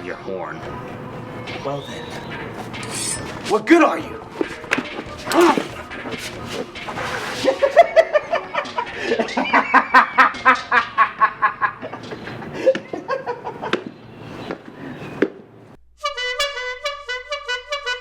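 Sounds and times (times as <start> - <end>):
clown voice laughing: 7.4 - 12.0.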